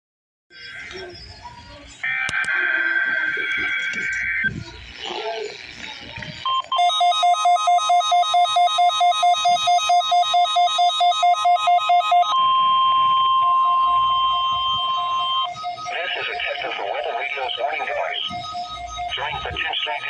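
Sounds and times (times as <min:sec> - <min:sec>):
rapid alert beeping: 0:02.0 - 0:20.0
steady alarm tone: 0:02.0 - 0:20.0.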